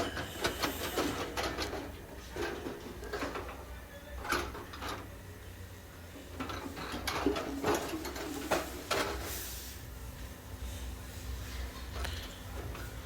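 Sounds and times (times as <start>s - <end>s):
metal knocks and clatter: 6.4s - 9.2s.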